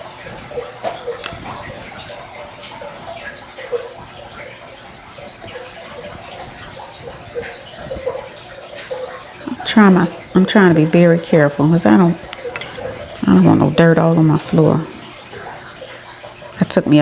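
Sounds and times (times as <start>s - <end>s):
water bubbling blips: 0.0s - 17.0s
water trickling and splashing: 0.0s - 17.0s.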